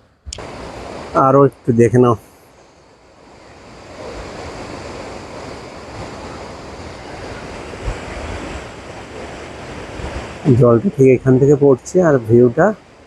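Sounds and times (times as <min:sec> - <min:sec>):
wind: 0:00.0 - 0:13.0
waterfall rushing: 0:00.4 - 0:13.0
wind buffeting microphone: 0:02.9 - 0:13.0.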